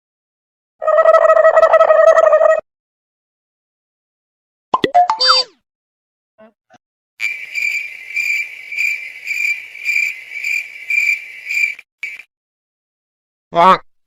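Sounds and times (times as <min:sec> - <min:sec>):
crickets chirping: 0:07.2 - 0:12.3.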